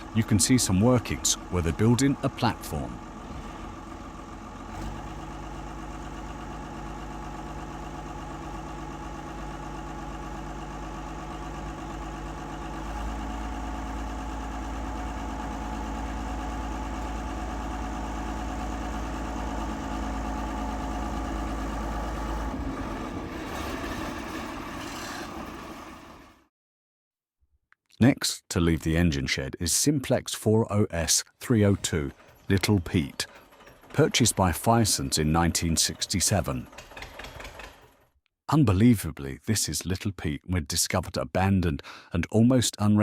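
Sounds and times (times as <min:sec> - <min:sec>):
diesel locomotive engine running: 0:00.0 - 0:26.5, 0:31.4 - 0:38.1.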